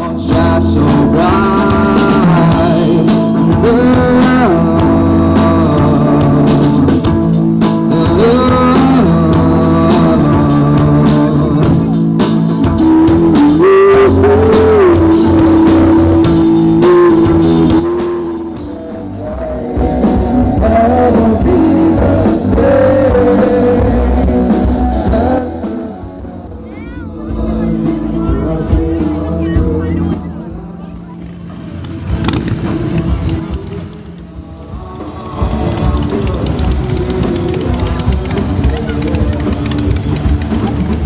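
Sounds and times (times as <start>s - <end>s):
electric guitar: 0.0s - 41.0s
rock band playing live: 0.0s - 41.0s.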